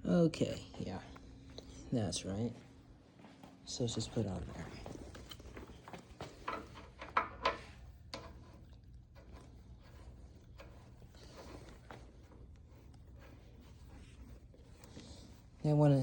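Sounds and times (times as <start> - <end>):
fitting ticking and rattling: 6.2 - 8.4.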